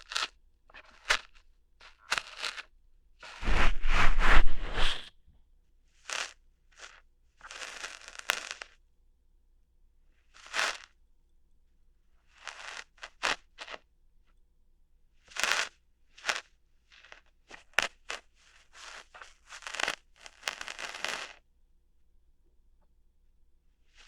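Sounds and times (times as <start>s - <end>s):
close crunchy scratching: 0.0s - 5.1s, 7.4s - 8.8s, 15.3s - 21.4s.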